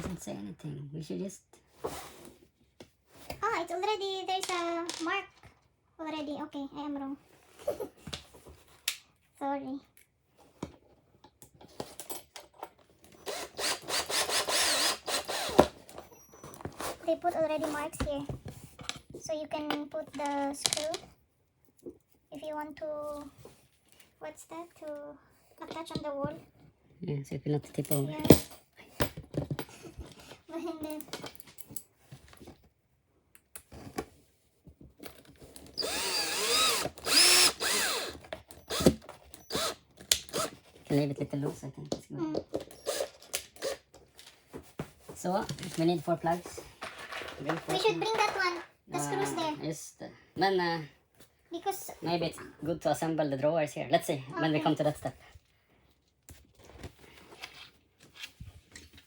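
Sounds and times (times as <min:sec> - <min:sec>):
power screwdriver motor whine: 0:13.2 - 0:15.7, 0:35.8 - 0:40.5, 0:42.8 - 0:43.8
cordless drill into wood: 0:13.2 - 0:15.9, 0:35.7 - 0:40.6, 0:42.7 - 0:43.9.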